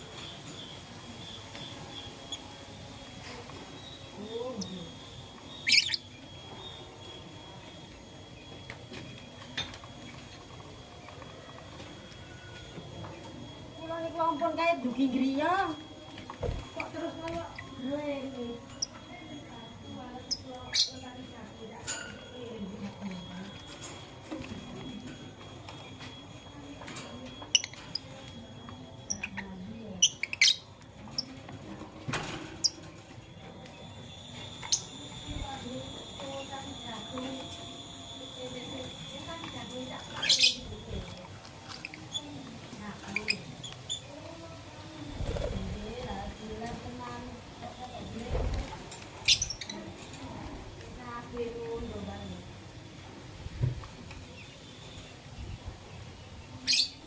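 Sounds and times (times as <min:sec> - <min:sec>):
bird shrill chirp: 0:03.8 - 0:07.2, 0:33.8 - 0:42.3, 0:56.6 - 0:57.0
birds chirping sharply: 0:05.4 - 0:06.8.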